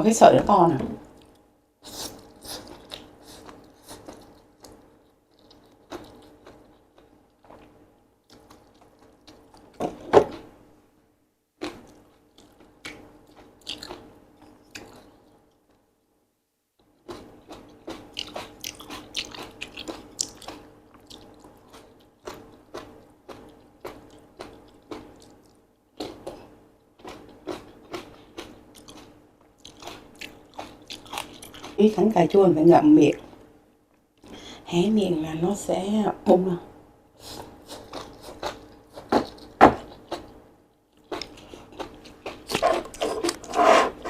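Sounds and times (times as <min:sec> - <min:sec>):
wet chewing and biting: 0:02.1 - 0:09.8, 0:17.0 - 0:26.4.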